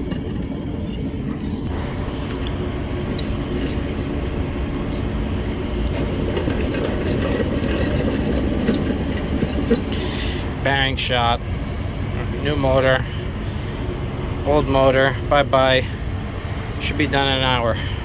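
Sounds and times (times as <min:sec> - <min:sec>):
electric motor bearing grinding: 0:00.0 - 0:10.4.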